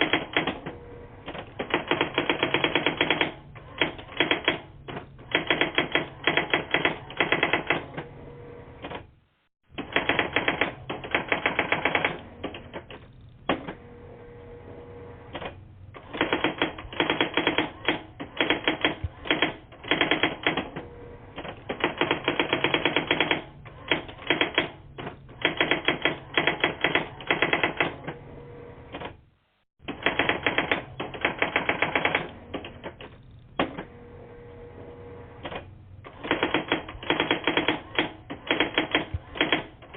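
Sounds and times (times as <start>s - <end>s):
rapid typewriter-like clicking: 0.0s - 0.6s, 1.3s - 7.9s, 9.7s - 13.6s, 15.3s - 20.7s, 21.4s - 28.0s, 29.8s - 33.7s, 35.4s - 39.9s.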